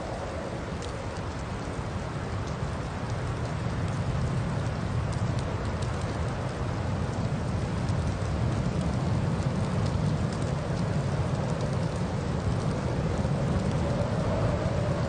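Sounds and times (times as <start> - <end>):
faint ticks: 0.7 - 6.5, 7.1 - 15.0
car driving through snowstorm: 3.7 - 15.0.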